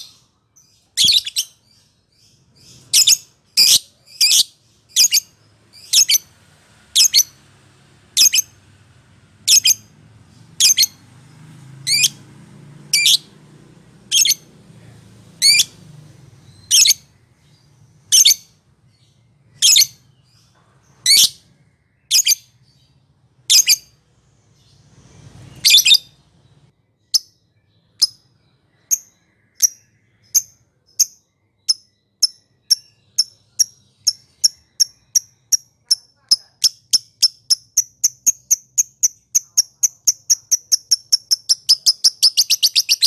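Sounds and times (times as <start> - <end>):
lovebird shrill chirps: 0.0 - 1.9, 2.6 - 6.3, 6.9 - 7.4, 8.2 - 8.6, 9.4 - 9.9, 10.6 - 11.0, 11.8 - 12.2, 14.1 - 14.4, 15.4 - 15.8, 16.4 - 20.4, 21.0 - 22.8, 23.4 - 24.0, 25.5 - 26.3, 27.0 - 43.0.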